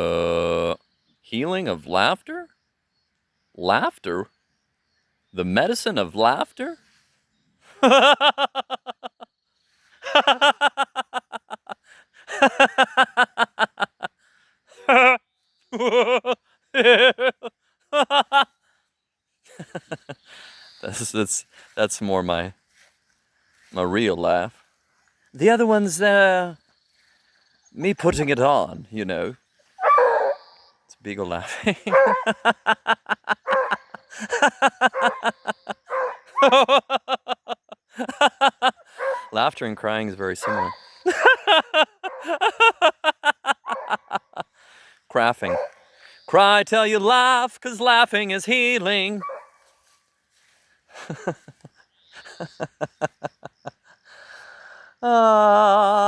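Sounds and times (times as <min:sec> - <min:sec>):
person laughing out loud: 0:07.7 - 0:09.2, 0:10.0 - 0:14.1, 0:14.7 - 0:18.5, 0:31.4 - 0:38.9, 0:41.0 - 0:44.5, 0:51.0 - 0:53.8, 0:55.0 - 0:56.0.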